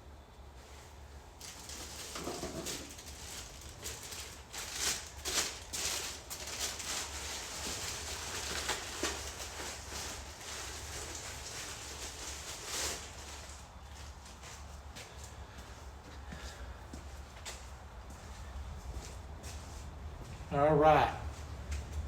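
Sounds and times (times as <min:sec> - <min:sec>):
packaging rustling: 0:01.4 - 0:14.2.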